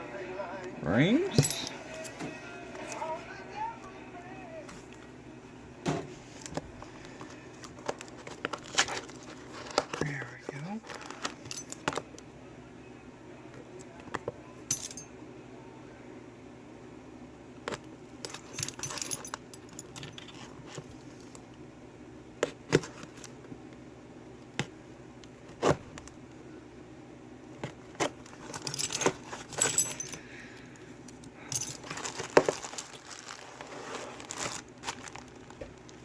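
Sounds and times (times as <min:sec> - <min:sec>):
rustling and jangling: 0:01.2 - 0:02.1, 0:10.9 - 0:11.9, 0:18.2 - 0:21.3, 0:28.3 - 0:35.9.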